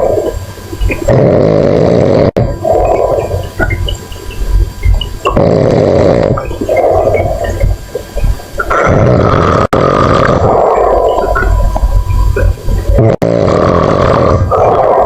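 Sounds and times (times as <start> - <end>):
monkey snoring: 1.0 - 3.4, 5.3 - 7.4, 8.7 - 11.5, 13.0 - 15.0.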